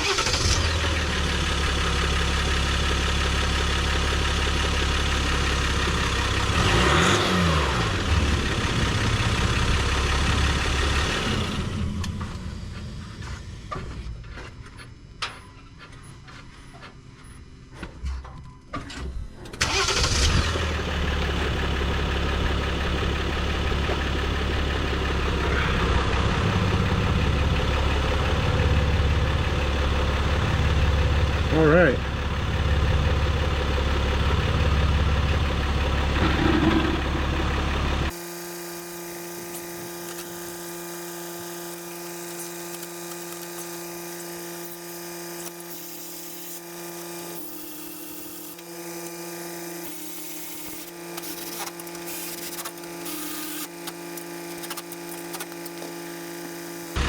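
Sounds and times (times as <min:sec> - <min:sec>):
diesel engine idling: 0:00.0 - 0:13.7, 0:19.6 - 0:38.2
engine clicks: 0:19.5 - 0:20.4.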